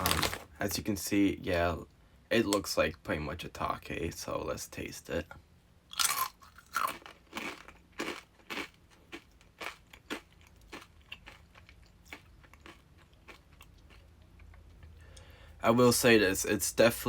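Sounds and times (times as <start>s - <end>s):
chip crunching while chewed: 5.9s - 14.6s.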